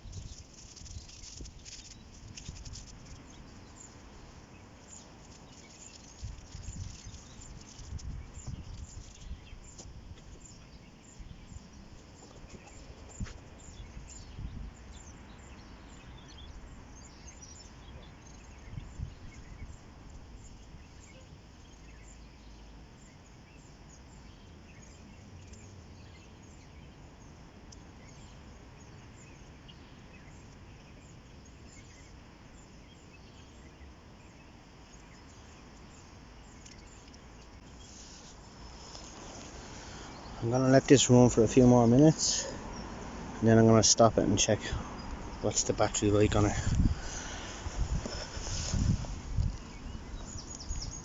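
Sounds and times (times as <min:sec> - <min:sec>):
birds chirping: 0:00.0 - 0:51.0
steady low rumble: 0:38.4 - 0:51.0.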